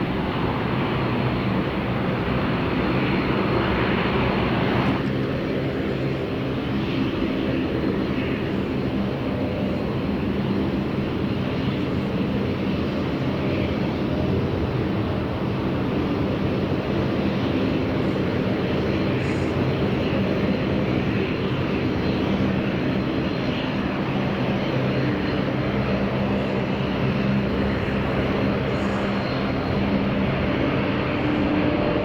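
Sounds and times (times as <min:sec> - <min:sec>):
airliner engines running: 0:00.0 - 0:32.0.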